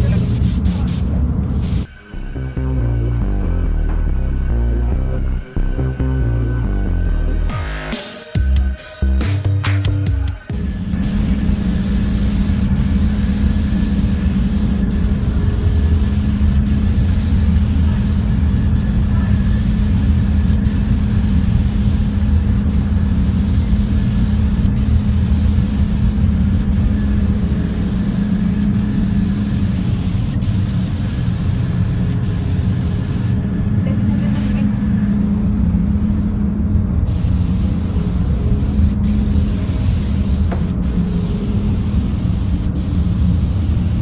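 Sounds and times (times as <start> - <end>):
paint spray gun hissing: 0.0 - 1.9, 10.5 - 33.4, 37.1 - 44.0
low steady hum: 10.5 - 44.0.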